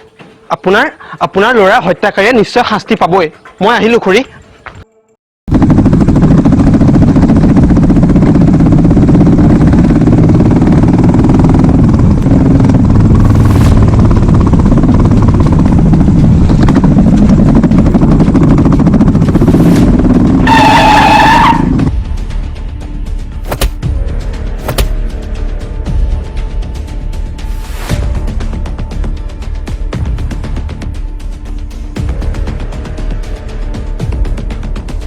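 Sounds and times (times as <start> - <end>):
vehicle engine running loudly: 5.5 - 21.9.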